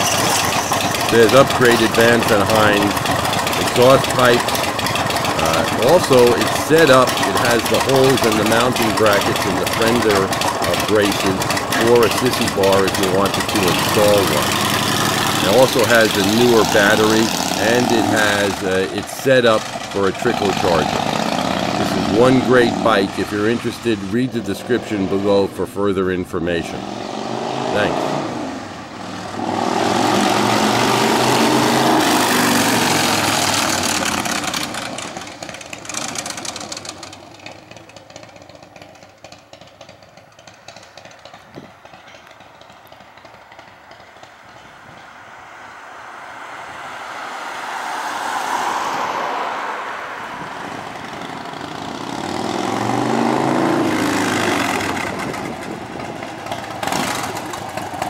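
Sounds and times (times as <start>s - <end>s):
motorcycle engine riding away: 0.0s - 58.0s.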